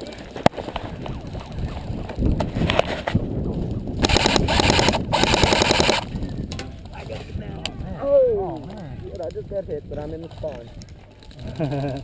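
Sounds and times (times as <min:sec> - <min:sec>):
airsoft gun full-auto bursts: 0:04.0 - 0:06.1.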